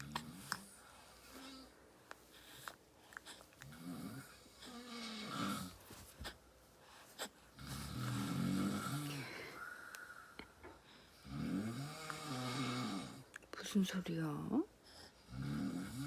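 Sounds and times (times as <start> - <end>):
man snoring loudly: 3.8 - 5.7, 7.9 - 9.2, 11.2 - 13.2, 15.3 - 16.0.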